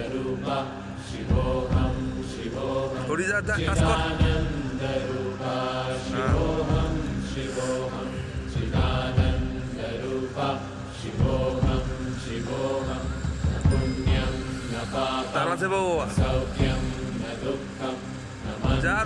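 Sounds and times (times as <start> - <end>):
low rumbling noise: 0.0 - 19.0
person chanting in long notes: 0.0 - 19.0.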